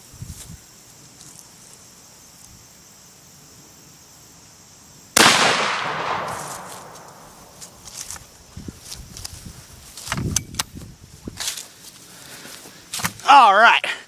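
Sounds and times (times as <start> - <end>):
shotgun firing: 5.2 - 7.3.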